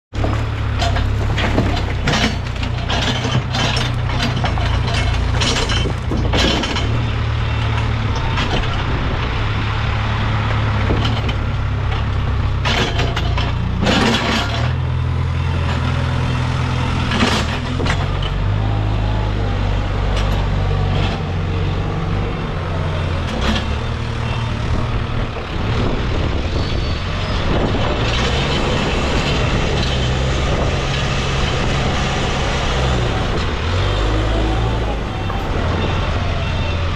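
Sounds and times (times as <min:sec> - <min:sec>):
diesel engine running under load: 0:00.1 - 0:36.9
metal knocks and clanks: 0:00.2 - 0:09.4, 0:10.5 - 0:14.8, 0:17.0 - 0:18.6.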